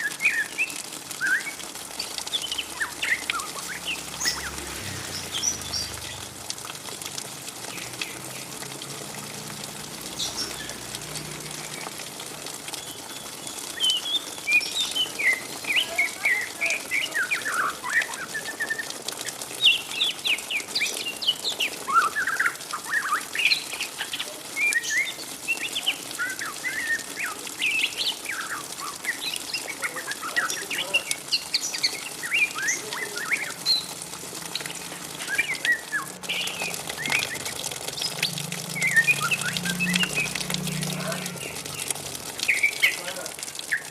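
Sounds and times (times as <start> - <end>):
young bird twittering chatter: 19.6 - 43.9.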